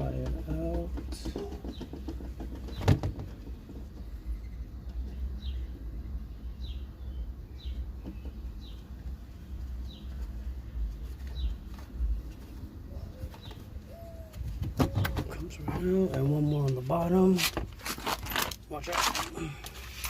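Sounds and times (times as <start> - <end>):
steady low rumble: 3.2 - 17.8.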